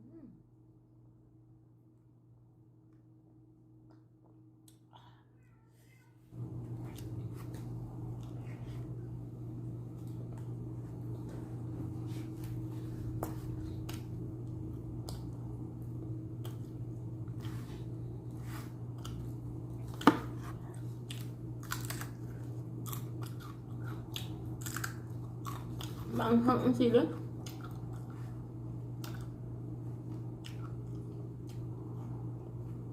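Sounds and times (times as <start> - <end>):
steady low hum: 0.0 - 32.9
person biting and chewing food: 18.7 - 26.1, 27.4 - 32.0.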